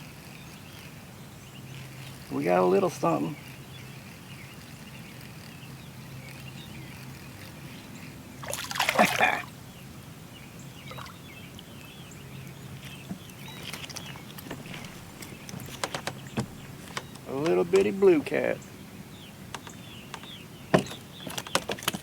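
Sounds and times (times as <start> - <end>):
steady low hum: 0.0 - 19.3
fish splashing at water surface: 8.4 - 9.5.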